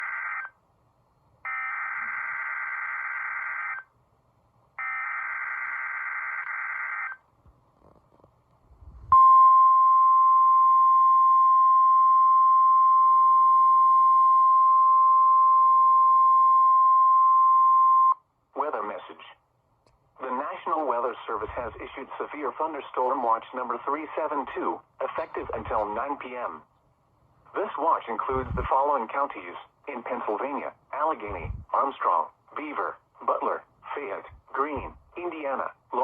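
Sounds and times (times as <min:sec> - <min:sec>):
steady warning alarm tone: 0:00.0 - 0:00.6, 0:01.5 - 0:03.9, 0:04.8 - 0:07.2.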